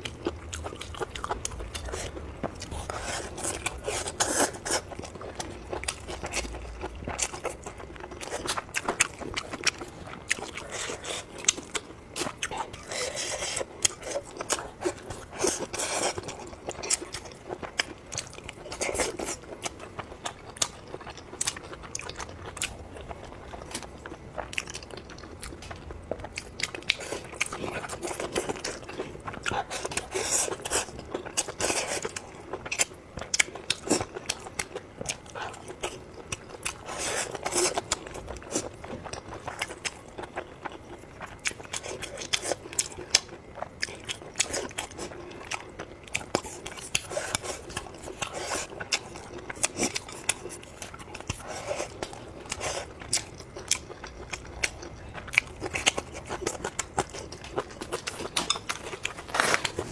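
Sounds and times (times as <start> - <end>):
person chewing and biting food: 0.0 - 59.9.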